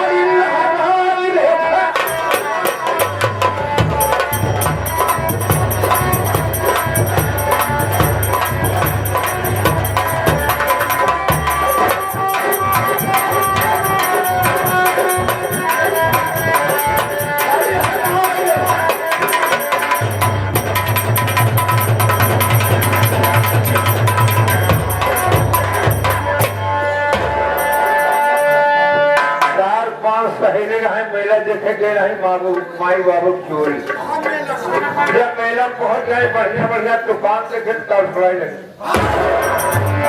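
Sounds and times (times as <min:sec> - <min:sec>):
fast hand drumming: 0:01.9 - 0:28.2
jingling percussion: 0:01.9 - 0:29.6, 0:39.0 - 0:40.0
deep drum beat: 0:02.0 - 0:28.1, 0:38.9 - 0:40.0.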